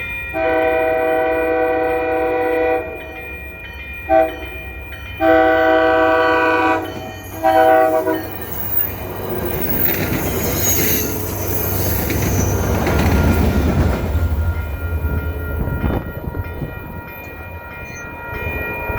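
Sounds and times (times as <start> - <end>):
train rumbling: 0.0 - 18.9
train horn blasts: 0.4 - 3.2, 4.1 - 4.5, 5.2 - 8.3
wheels clacking over rail joints: 5.9 - 15.2.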